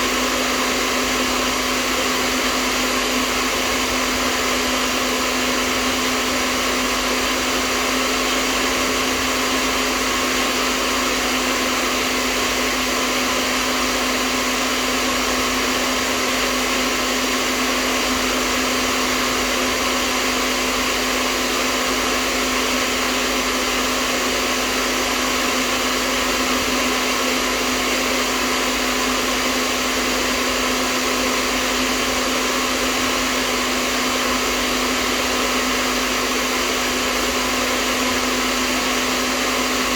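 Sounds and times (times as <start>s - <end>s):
hairdryer running: 0.0s - 39.9s.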